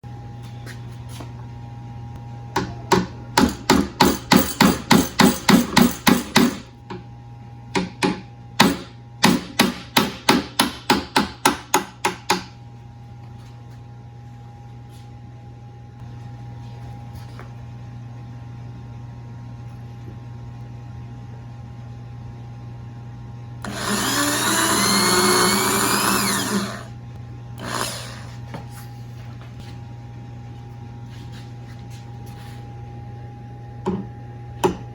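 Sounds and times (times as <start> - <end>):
steady hum: 0.0 - 34.9
hammer strikes: 2.6 - 6.6, 7.8 - 12.5
power tool whining: 23.6 - 27.0, 27.6 - 28.5.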